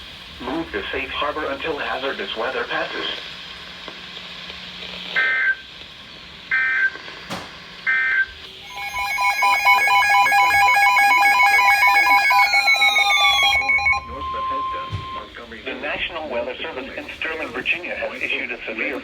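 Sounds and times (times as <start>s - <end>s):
pulsing warbling alert tone: 8.6s - 15.2s
tone sliding downward: 8.6s - 15.2s
digital header tone bursts: 8.6s - 15.4s.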